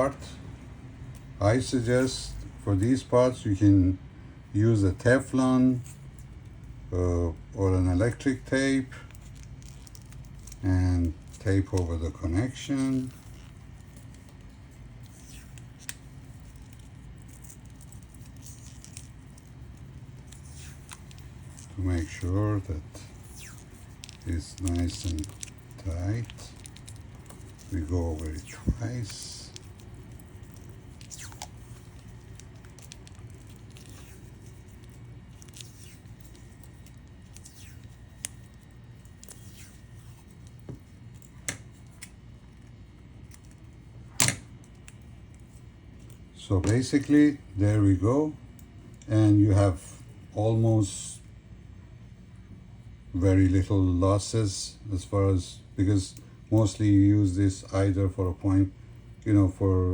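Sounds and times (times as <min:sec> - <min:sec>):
tape crackling and rustling: 0:00.0 - 0:03.6, 0:04.6 - 0:47.5.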